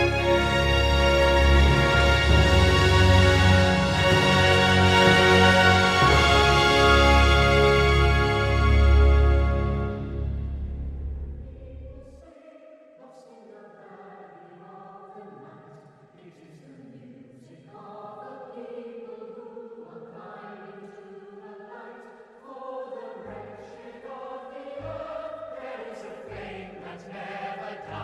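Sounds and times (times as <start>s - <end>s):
choir singing soft held notes: 0.0s - 10.5s, 17.4s - 28.0s
loud low rumble: 9.5s - 12.2s.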